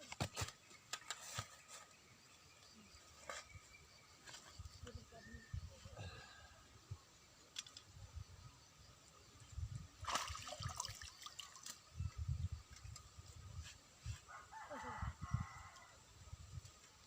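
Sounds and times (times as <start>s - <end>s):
rooster crowing: 14.3s - 16.0s.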